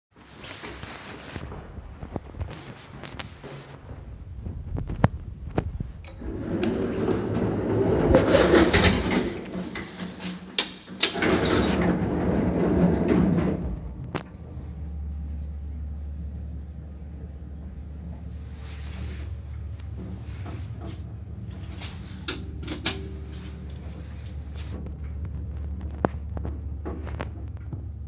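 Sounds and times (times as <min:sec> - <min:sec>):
lift doors rattling and scraping: 0:05.6 - 0:14.2, 0:18.1 - 0:28.0.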